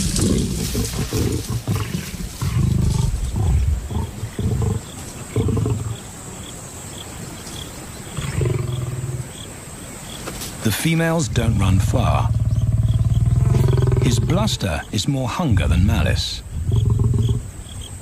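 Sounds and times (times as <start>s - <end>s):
lions snarling and growling: 0.0s - 6.1s, 8.1s - 9.4s, 11.5s - 14.8s, 16.6s - 17.5s.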